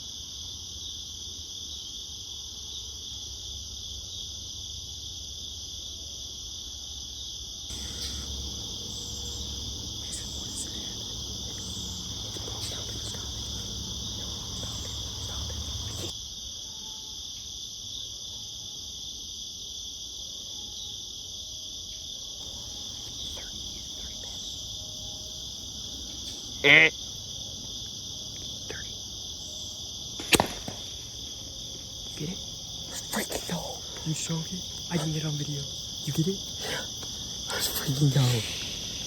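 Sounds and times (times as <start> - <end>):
crickets and insects chirring: 0.0 - 39.0.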